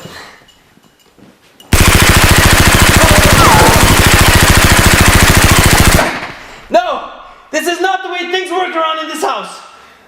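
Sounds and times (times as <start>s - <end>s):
rapid automatic gunfire: 1.7s - 6.5s.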